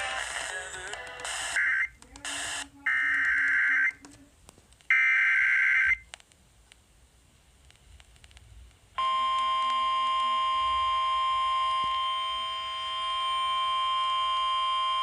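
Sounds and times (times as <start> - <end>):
static hiss: 0.0 - 3.0
low pulsing beep: 9.0 - 15.0.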